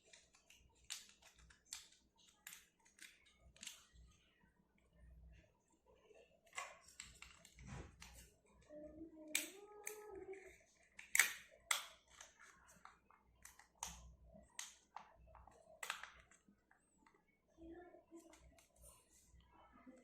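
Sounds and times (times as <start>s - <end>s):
plastic and metal parts clicking: 0.0s - 3.9s, 6.4s - 8.3s, 9.3s - 16.5s.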